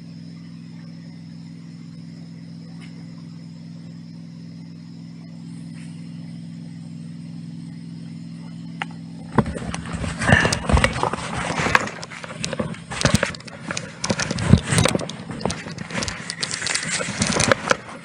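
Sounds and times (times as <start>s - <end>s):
steady low hum: 0.0s - 18.0s
clattering knocks and clicks: 8.8s - 18.0s.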